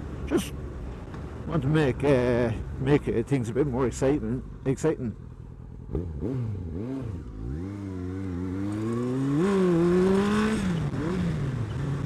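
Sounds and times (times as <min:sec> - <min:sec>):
motorcycle engine revving: 0:05.8 - 0:12.0.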